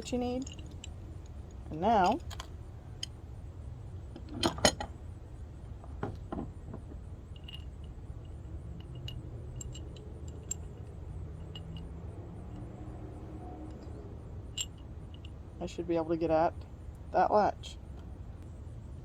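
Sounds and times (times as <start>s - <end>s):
metal hardware clinking: 0.0s - 3.2s, 4.2s - 5.0s, 7.3s - 12.6s, 14.5s - 15.4s.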